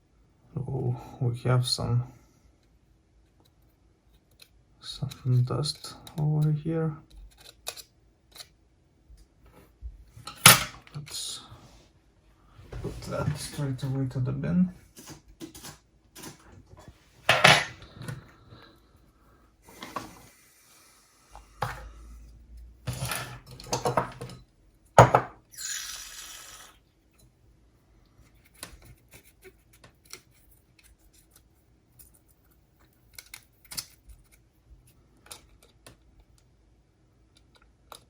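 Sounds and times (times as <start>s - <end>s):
plastic parts clicking and clattering: 17.3s - 18.2s.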